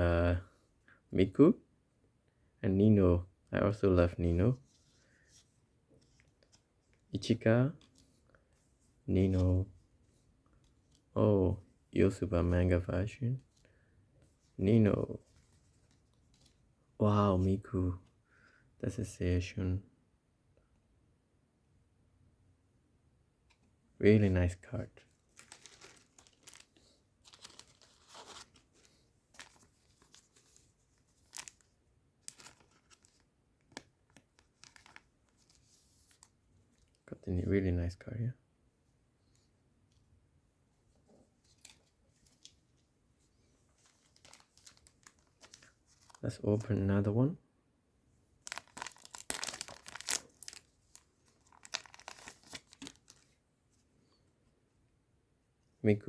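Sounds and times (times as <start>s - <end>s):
foil pack crinkling: 25.3s - 33.2s, 34.4s - 37.0s, 43.7s - 46.2s, 48.4s - 53.4s
trading cards rustling and clicking: 25.3s - 37.0s, 43.7s - 46.7s, 48.4s - 53.4s.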